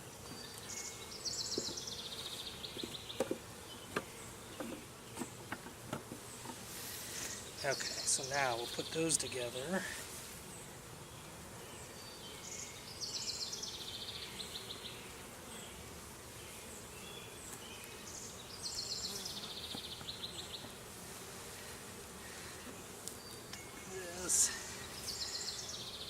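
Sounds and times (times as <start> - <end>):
honeybees buzzing: 0.0 - 26.0
songbird trill: 0.2 - 5.3, 7.3 - 9.7, 10.6 - 15.8, 16.4 - 20.8, 22.6 - 26.0.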